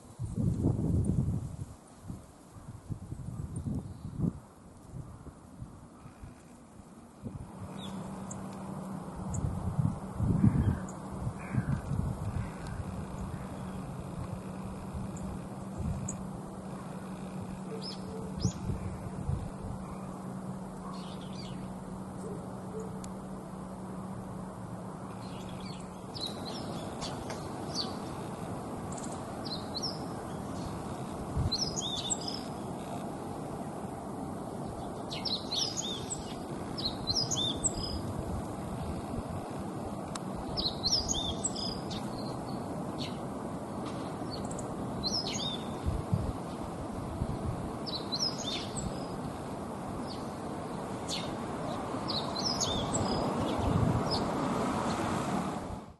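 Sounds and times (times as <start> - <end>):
bird twittering song: 3.4 - 4.3, 7.6 - 8.6, 9.2 - 9.6, 10.3 - 20.2, 20.8 - 23.0, 25.1 - 28.3, 28.9 - 33.0, 34.6 - 38.2, 40.4 - 46.7, 47.8 - 49.4, 50.0 - 54.4
low background rumble: 5.1 - 51.3.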